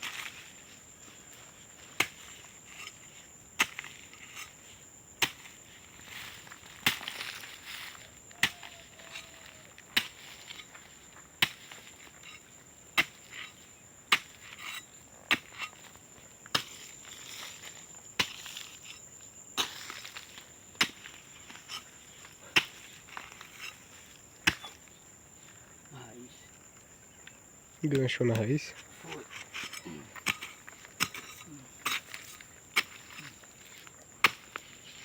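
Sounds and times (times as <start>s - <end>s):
insects buzzing: 0.0s - 35.0s
digging tool chopping into ground: 2.0s - 3.0s, 3.6s - 4.6s, 5.2s - 5.6s, 6.7s - 7.5s, 8.4s - 9.4s, 10.0s - 10.7s, 11.4s - 12.1s, 13.0s - 14.6s, 15.3s - 15.9s, 16.5s - 18.7s, 19.6s - 21.9s, 22.6s - 23.8s, 24.4s - 24.8s, 29.0s - 35.0s.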